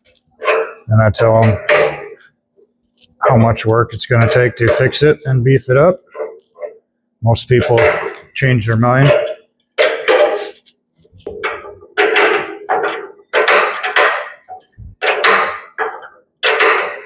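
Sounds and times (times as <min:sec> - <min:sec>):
hammer striking steel: 0:07.5 - 0:10.5.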